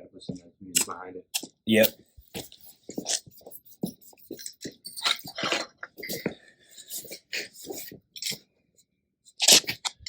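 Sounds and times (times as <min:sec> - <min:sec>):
soft squishing scrapes of adhesive: 0:01.7 - 0:08.5.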